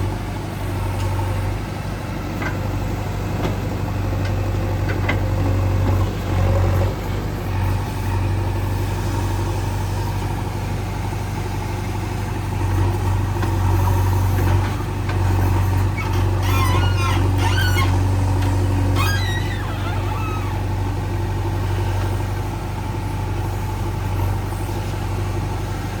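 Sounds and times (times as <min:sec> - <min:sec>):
diesel engine running: 0:00.0 - 0:26.0
short high squeaks: 0:16.0 - 0:18.1, 0:18.8 - 0:20.7.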